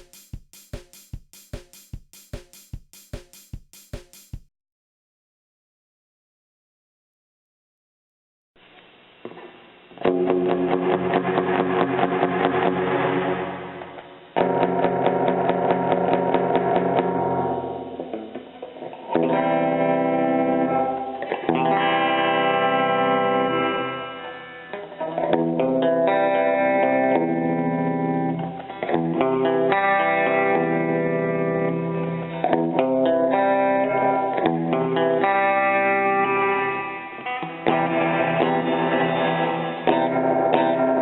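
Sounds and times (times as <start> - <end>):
electric guitar chords ringing: 10.1 - 18.3, 19.1 - 41.0.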